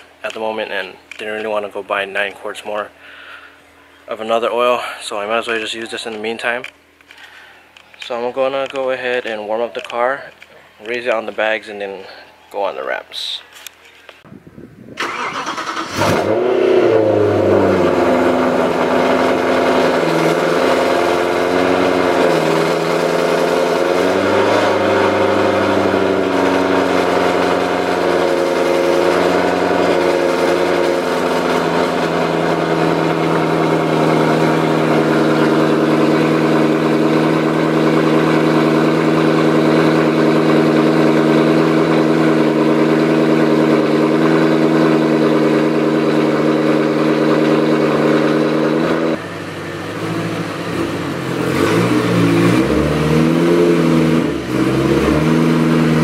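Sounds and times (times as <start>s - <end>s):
car engine idling: 15.0s - 56.0s.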